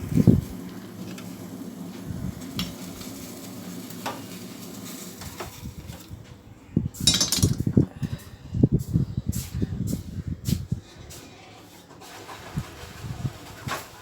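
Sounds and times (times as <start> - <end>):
steel utensils clinking: 7.0 - 7.7.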